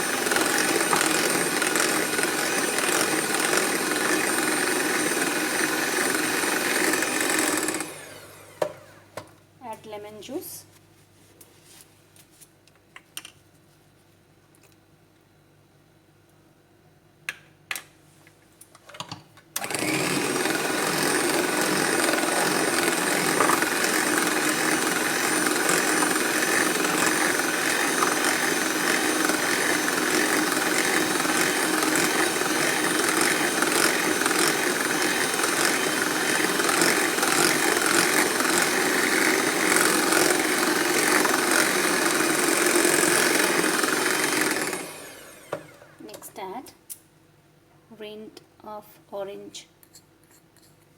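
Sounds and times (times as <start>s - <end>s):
electric mixer running: 0.0s - 9.0s, 19.6s - 46.0s.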